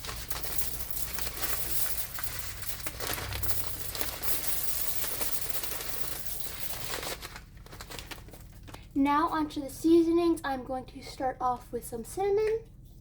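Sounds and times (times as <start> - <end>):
lentils pouring and rattling: 0.0 - 8.3.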